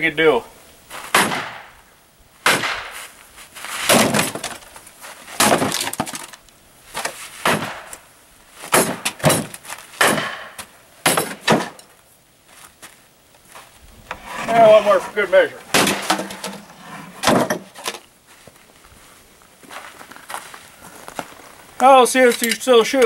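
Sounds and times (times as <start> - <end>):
metal slammed against wood: 1.1 - 1.8, 2.4 - 3.0, 3.9 - 4.6, 5.4 - 6.3, 7.4 - 7.9, 8.7 - 11.9, 15.7 - 18.0.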